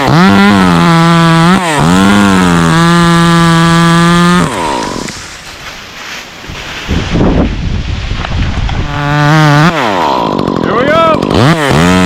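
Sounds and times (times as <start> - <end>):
chainsaw revving: 0.0 - 5.5, 8.5 - 12.0.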